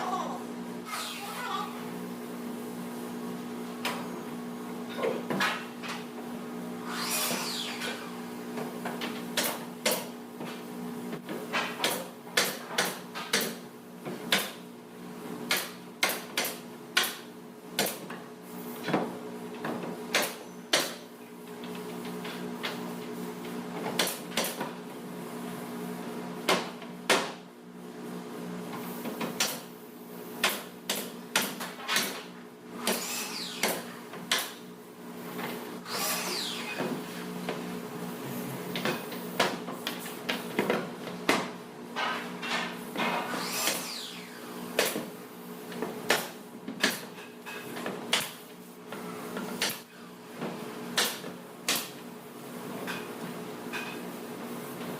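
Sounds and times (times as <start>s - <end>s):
low machine hum: 0.0s - 8.7s.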